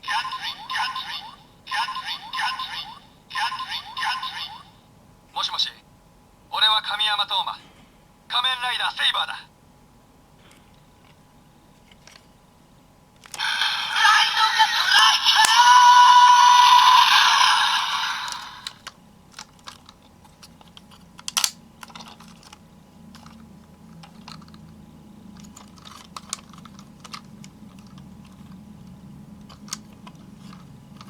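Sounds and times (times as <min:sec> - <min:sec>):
plastic toy clicks and snaps: 0:13.2 - 0:13.5, 0:18.2 - 0:23.4, 0:25.4 - 0:28.4, 0:29.4 - 0:30.6
electronic sound from toy speaker: 0:13.4 - 0:18.8.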